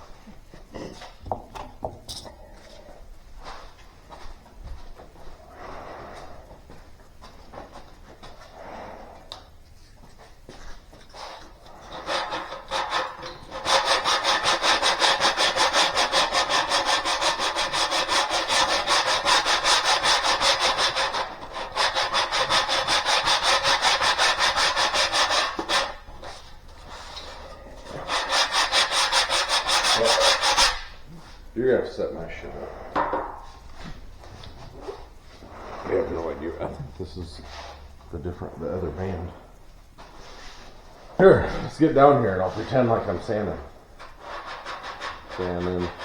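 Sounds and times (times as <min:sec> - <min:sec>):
sanding car body filler: 0:12.1 - 0:26.0, 0:28.1 - 0:30.9.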